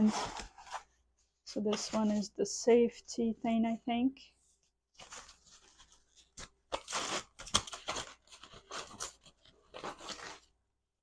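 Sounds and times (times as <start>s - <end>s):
packaging crinkling and tearing: 5.0s - 10.6s.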